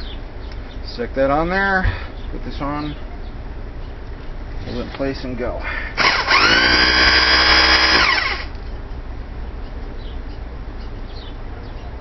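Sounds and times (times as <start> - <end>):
hammer drill on metal rivet: 6.0 - 8.6.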